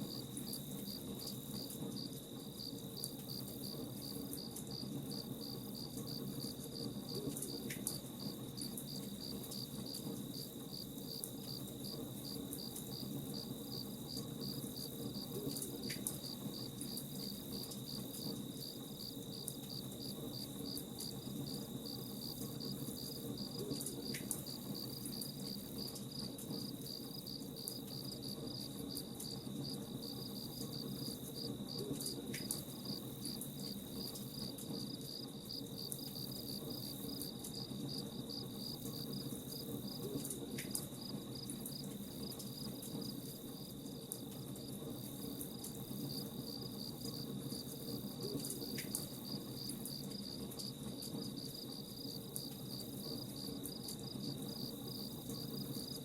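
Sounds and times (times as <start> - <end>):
crickets chirping: 0.0 - 56.0
high insect trill: 0.0 - 56.0.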